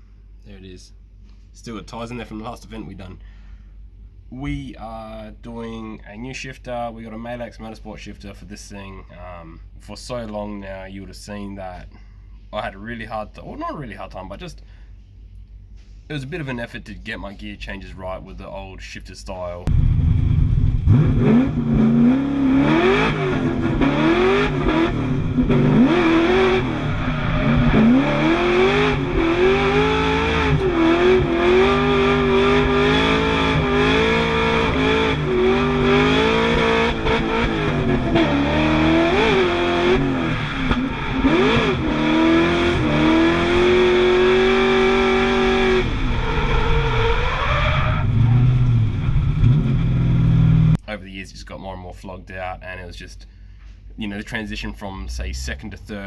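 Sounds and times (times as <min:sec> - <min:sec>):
car engine revving: 0:19.7 - 0:50.8.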